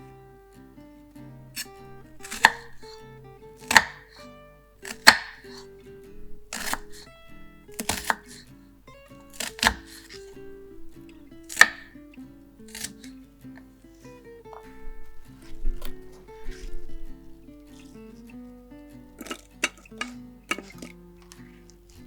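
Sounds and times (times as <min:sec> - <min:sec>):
plucked guitar music: 0:00.0 - 0:22.0
knife chopping on cutting board: 0:01.6 - 0:03.0, 0:03.6 - 0:04.2, 0:04.8 - 0:08.5, 0:09.3 - 0:12.0, 0:12.7 - 0:13.0, 0:14.6 - 0:17.9.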